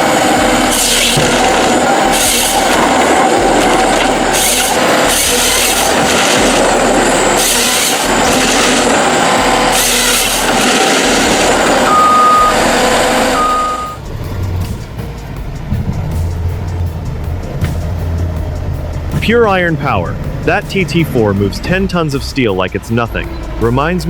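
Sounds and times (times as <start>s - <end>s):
heavy machinery engine: 0.0s - 24.0s
hissing grinding surge: 0.0s - 24.0s
short beeps: 11.8s - 14.0s.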